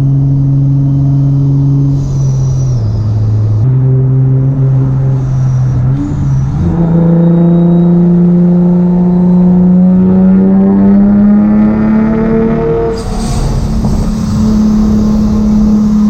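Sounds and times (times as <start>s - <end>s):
car engine pulling under load: 0.0s - 16.0s
supercharger whine: 0.0s - 16.0s.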